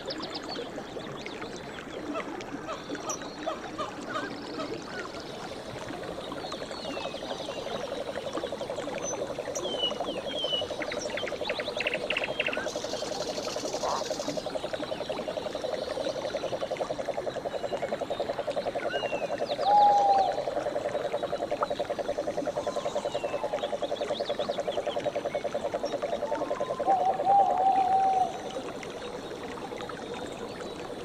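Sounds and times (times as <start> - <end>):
frogs calling in pulsing trill: 6.9 - 29.5.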